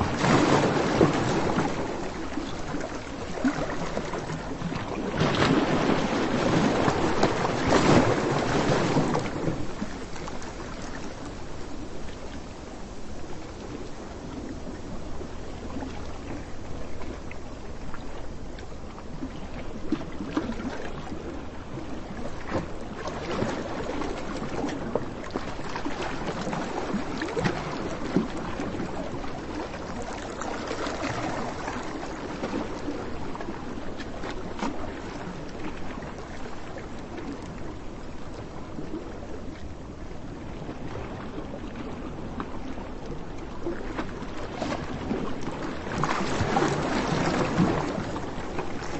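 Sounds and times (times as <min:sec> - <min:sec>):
waves washing on beach: 0:00.0 - 0:18.7
wind: 0:00.0 - 0:48.9.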